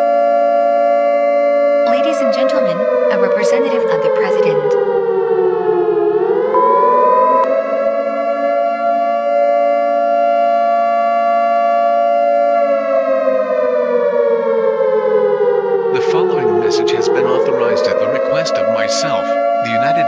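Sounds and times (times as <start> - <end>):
civil defense siren wailing: 0.0 - 20.0
brief steady beep: 6.6 - 7.6.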